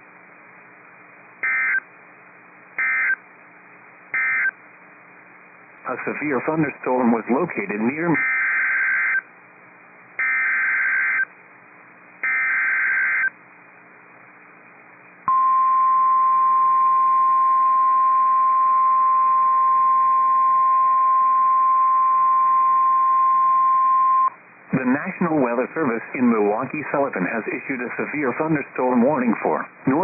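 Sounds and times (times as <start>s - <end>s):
steady warning alarm tone: 1.4s - 1.8s, 2.8s - 3.2s, 4.2s - 4.5s, 8.2s - 9.2s, 10.2s - 11.3s, 12.2s - 13.3s
harsh buzzing data bursts: 1.4s - 1.9s, 2.8s - 3.2s, 4.2s - 4.6s, 7.9s - 9.3s, 10.2s - 11.3s, 12.2s - 13.4s.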